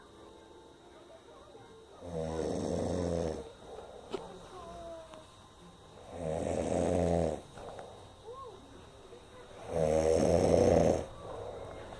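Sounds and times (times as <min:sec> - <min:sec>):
loud heavy snoring: 0:02.0 - 0:03.5, 0:06.0 - 0:07.5, 0:09.6 - 0:11.1
quiet breathing: 0:02.3 - 0:11.9.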